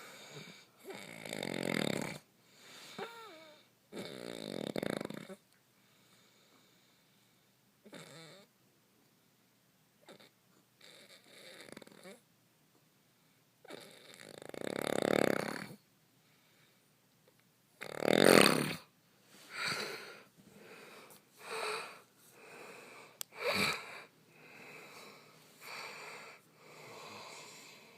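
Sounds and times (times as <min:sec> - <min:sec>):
person snoring: 0:00.0 - 0:02.2, 0:17.8 - 0:18.9, 0:19.5 - 0:27.9.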